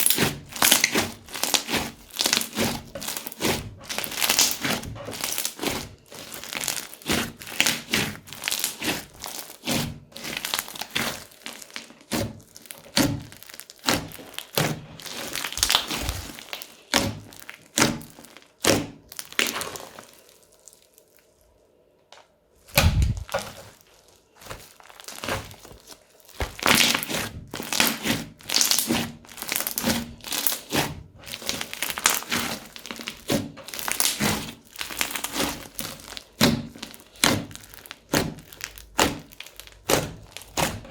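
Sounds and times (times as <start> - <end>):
crunchy slime being squeezed: 0.0 - 21.7, 22.6 - 40.9
dull thump: 22.7 - 23.4.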